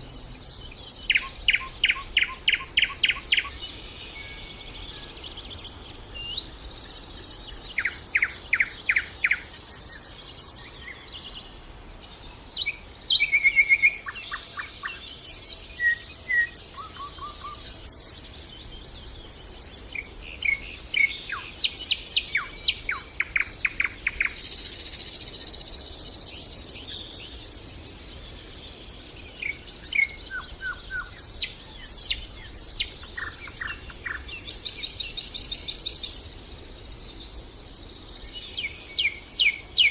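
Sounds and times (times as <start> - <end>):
nightingale singing: 0.0 - 39.9.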